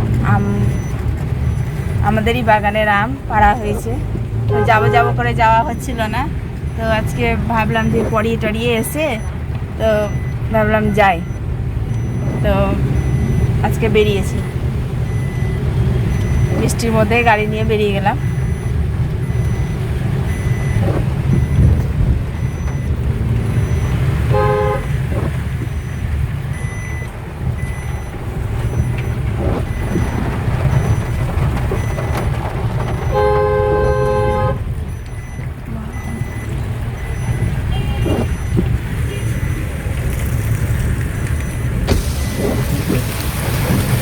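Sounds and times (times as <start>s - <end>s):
road and engine rumble: 0.0s - 44.0s
car horn toots: 4.4s - 5.4s, 24.2s - 25.1s, 33.0s - 34.7s, 37.5s - 39.5s.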